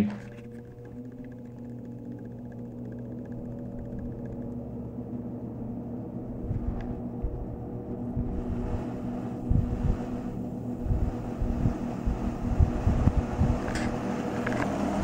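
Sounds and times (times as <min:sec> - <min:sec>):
box fan running: 0:00.0 - 0:15.0
wind gusts on microphone: 0:06.4 - 0:14.0.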